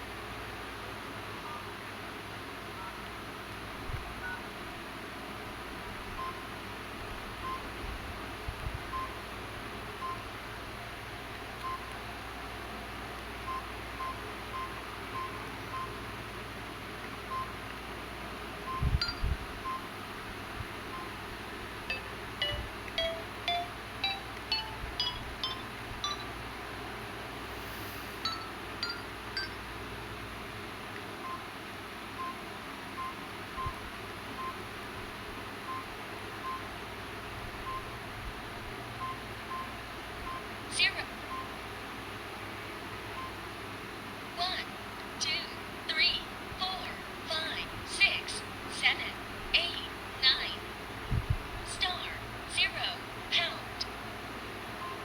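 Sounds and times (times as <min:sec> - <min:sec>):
phone keypad beeps: 0:06.2 - 0:06.4, 0:07.4 - 0:07.7, 0:08.9 - 0:09.2, 0:10.0 - 0:10.2, 0:11.6 - 0:12.0, 0:13.5 - 0:16.0, 0:17.3 - 0:17.6, 0:18.7 - 0:19.9, 0:20.9 - 0:21.2, 0:21.9 - 0:26.4, 0:28.2 - 0:29.7, 0:31.2 - 0:31.4, 0:33.0 - 0:33.8, 0:34.4 - 0:34.6, 0:35.7 - 0:36.7, 0:37.7 - 0:37.9.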